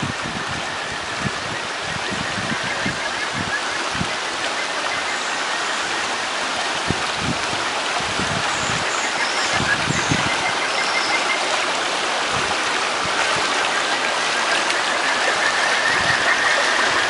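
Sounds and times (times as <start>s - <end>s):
mountain stream rushing: 0.0s - 17.0s
high trilling frog calls: 0.7s - 6.6s, 8.4s - 11.6s, 13.5s - 17.0s.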